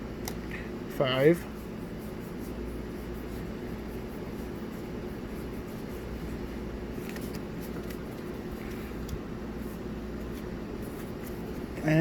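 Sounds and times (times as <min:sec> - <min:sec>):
low room hum: 0:00.0 - 0:12.0.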